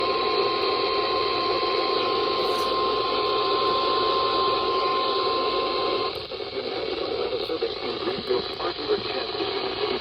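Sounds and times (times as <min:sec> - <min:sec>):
steady high alarm tone: 0:00.0 - 0:06.2
radio static hiss: 0:00.0 - 0:10.0.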